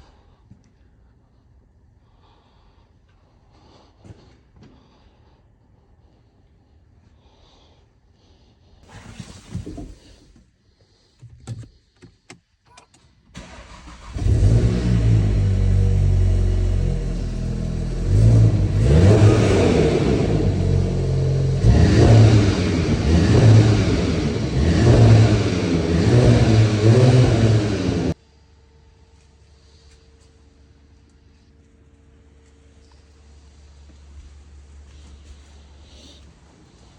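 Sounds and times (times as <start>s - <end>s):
car engine idling and revving: 13.4s - 28.4s, 29.4s - 36.9s.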